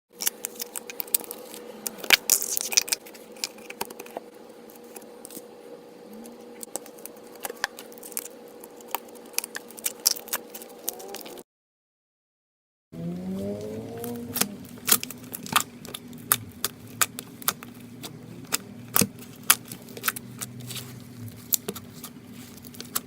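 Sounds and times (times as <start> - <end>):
faint hum: 0.2 - 11.4, 13.0 - 23.0.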